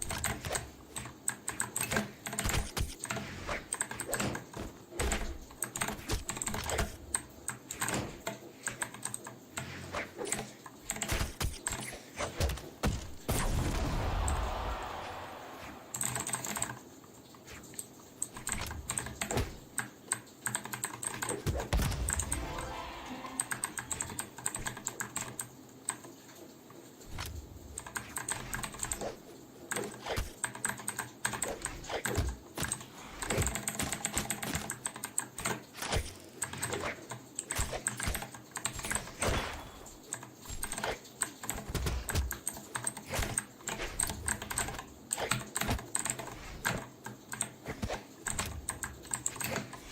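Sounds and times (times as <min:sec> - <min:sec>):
mechanical keyboard typing: 0:18.2 - 0:26.0.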